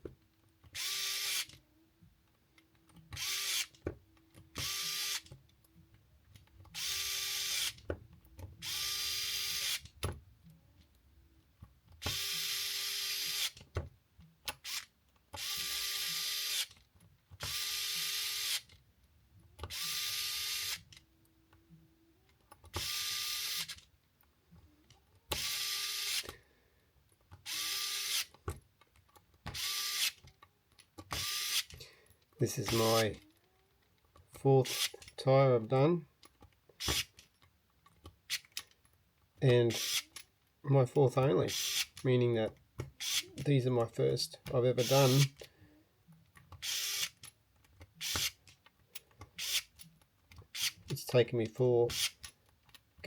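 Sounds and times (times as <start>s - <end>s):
cordless drill driving screws: 0.7s - 1.6s, 3.1s - 3.8s, 4.6s - 5.2s, 6.8s - 7.8s, 8.6s - 9.8s, 12.0s - 13.6s, 14.6s - 16.7s, 17.4s - 18.7s, 19.7s - 20.9s, 22.7s - 23.8s, 25.3s - 26.4s, 27.4s - 28.4s, 29.5s - 30.2s, 31.1s - 31.8s, 34.6s - 35.0s, 36.8s - 37.1s, 39.7s - 40.1s, 41.5s - 42.0s, 43.0s - 43.3s, 44.8s - 45.4s, 46.5s - 47.2s, 48.0s - 48.4s, 49.4s - 49.7s, 50.5s - 50.8s, 51.9s - 52.2s.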